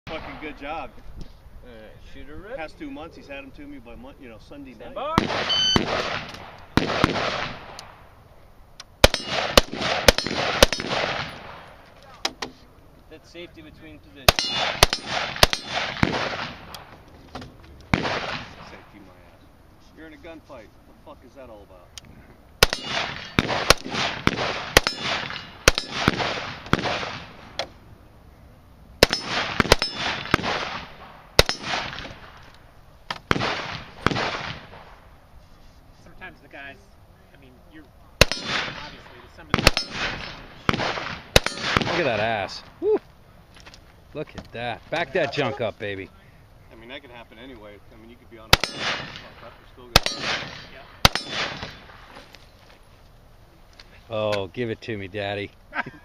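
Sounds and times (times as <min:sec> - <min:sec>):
rifle shots with echo: 0:05.1 - 0:08.1, 0:09.0 - 0:11.8, 0:14.2 - 0:16.9, 0:17.9 - 0:19.0, 0:22.6 - 0:27.6, 0:29.0 - 0:32.4, 0:33.2 - 0:35.0, 0:38.2 - 0:42.6, 0:48.4 - 0:52.1.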